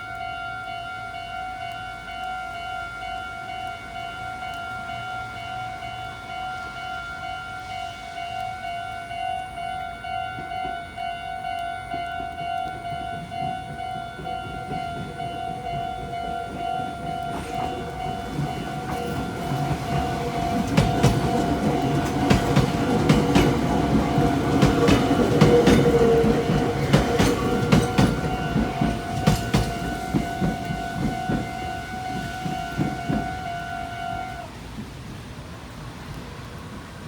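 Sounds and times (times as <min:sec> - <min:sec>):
level-crossing warning bell ringing: 0:00.0 - 0:35.0
train wheels clattering over rail joints: 0:12.6 - 0:35.2.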